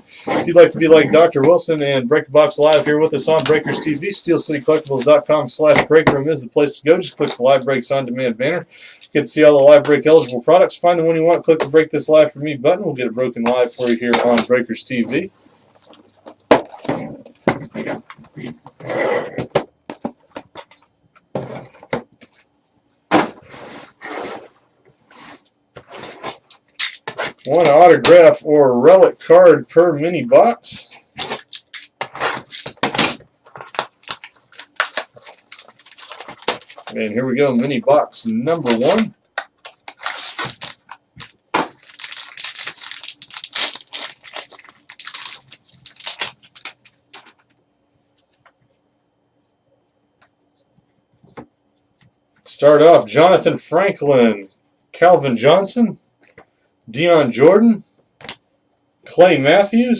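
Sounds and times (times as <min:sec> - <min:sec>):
cardboard packaging tearing: 0:31.2 - 0:37.0, 0:39.9 - 0:46.8.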